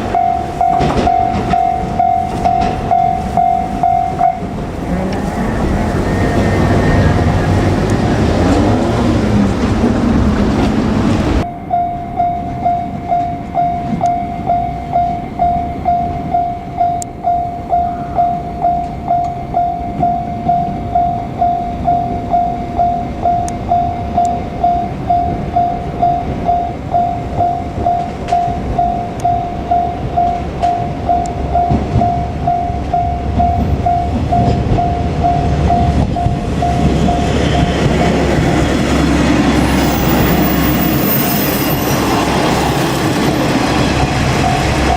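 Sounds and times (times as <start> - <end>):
level-crossing warning bell: 0.0 - 10.7, 11.4 - 44.9
low train rumble: 0.0 - 44.9
train running past: 0.0 - 44.9.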